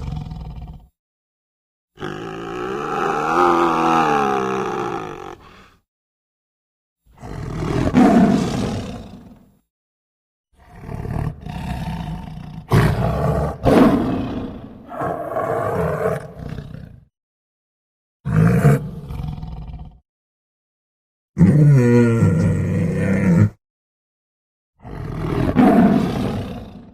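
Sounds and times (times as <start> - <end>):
large animal roaring: 0.0 - 0.9, 2.0 - 5.7, 7.2 - 9.5, 10.6 - 17.0, 18.3 - 20.0, 21.4 - 23.6, 24.8 - 26.9.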